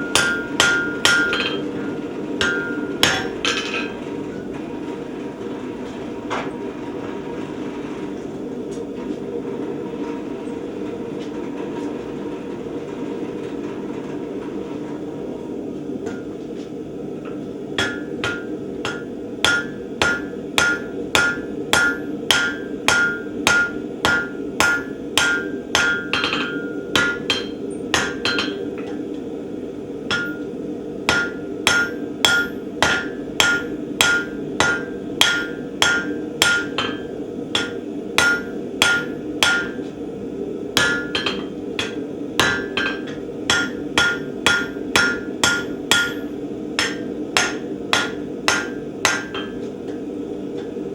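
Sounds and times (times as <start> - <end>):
hammer ringing on anvil: 0.0 - 1.7, 2.4 - 4.0, 17.8 - 29.0, 30.1 - 30.5, 31.1 - 39.8, 40.8 - 49.6
low background hum: 0.0 - 50.9.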